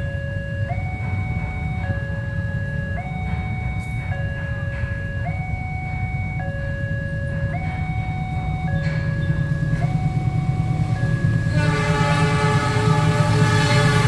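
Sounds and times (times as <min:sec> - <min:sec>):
locomotive rumbling: 0:00.0 - 0:14.0
two-note electronic warning tone: 0:00.0 - 0:14.0
locomotive air horn chord: 0:10.8 - 0:14.0.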